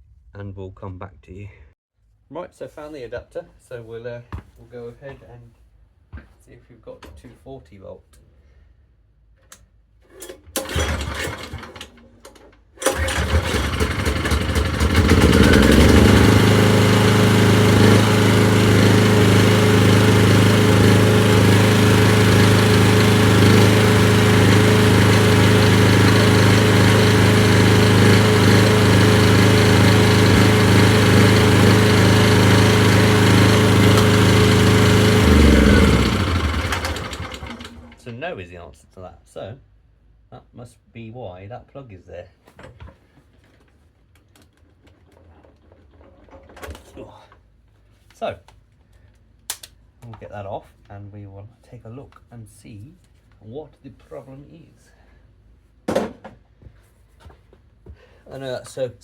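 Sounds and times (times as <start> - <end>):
generator engine running: 10.6 - 11.7, 12.8 - 38.0.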